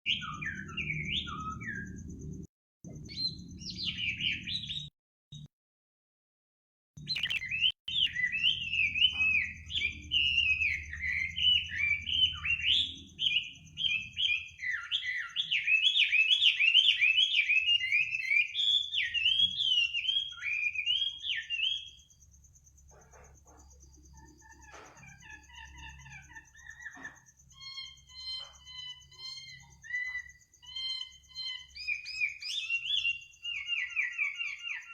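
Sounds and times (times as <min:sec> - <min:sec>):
bird chirping: 0:00.1 - 0:05.5, 0:07.0 - 0:34.9
faint whistled notes: 0:07.0 - 0:22.2.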